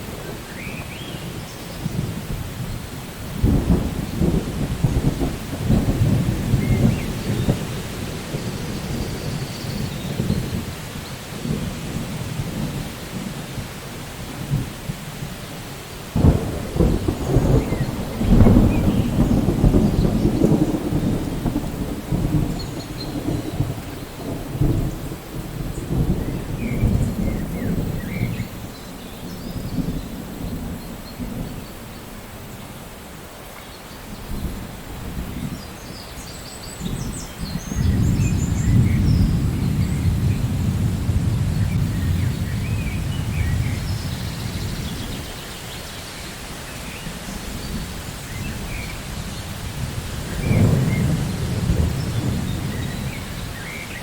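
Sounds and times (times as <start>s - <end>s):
rolling thunder: 0.0s - 15.4s, 16.1s - 32.1s, 36.6s - 54.0s
steady rain: 0.0s - 54.0s.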